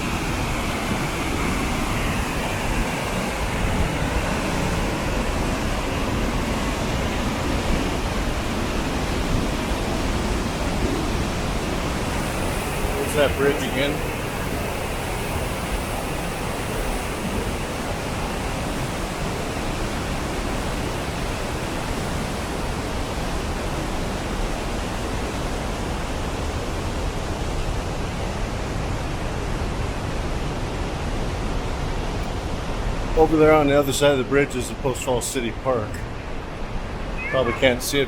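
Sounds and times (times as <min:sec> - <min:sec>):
waterfall rushing: 0:00.0 - 0:34.0, 0:36.0 - 0:38.0.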